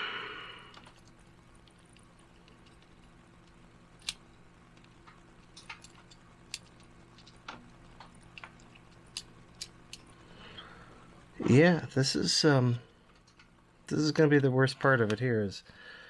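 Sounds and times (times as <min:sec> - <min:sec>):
steady low hum: 0:00.0 - 0:16.0
small parts clicking and tapping: 0:00.7 - 0:10.2, 0:13.0 - 0:13.6.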